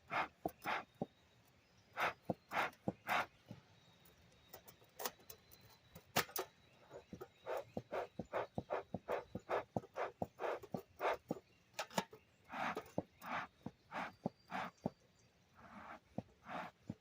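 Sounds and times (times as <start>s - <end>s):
bellows puffing air: 0.0s - 0.9s, 2.0s - 3.3s, 12.5s - 14.9s, 15.6s - 17.0s.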